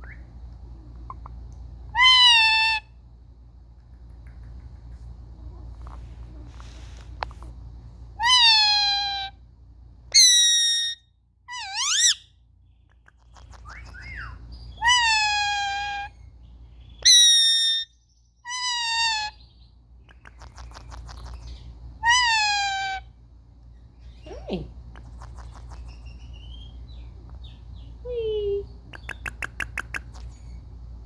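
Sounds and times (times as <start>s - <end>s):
parakeet calls: 1.1s - 3.0s, 8.2s - 9.4s, 10.1s - 12.3s, 13.0s - 28.0s, 28.7s - 30.7s.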